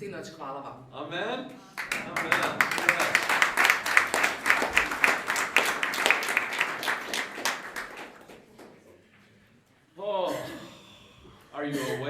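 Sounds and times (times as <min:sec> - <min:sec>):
audience applauding: 0:01.8 - 0:08.9.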